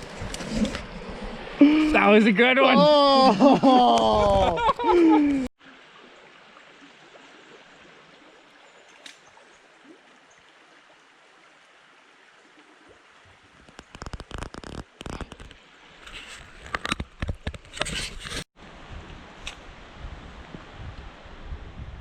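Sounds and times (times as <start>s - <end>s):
creek water over rocks: 0.0s - 21.5s
clicks and rustles: 13.6s - 18.5s.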